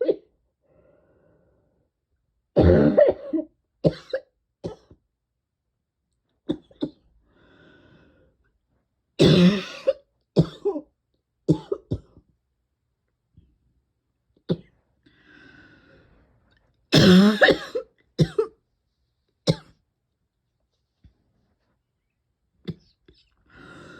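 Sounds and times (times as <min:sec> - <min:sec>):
person coughing: 0:02.6 - 0:05.0, 0:09.2 - 0:10.9, 0:11.5 - 0:12.2, 0:17.0 - 0:18.6.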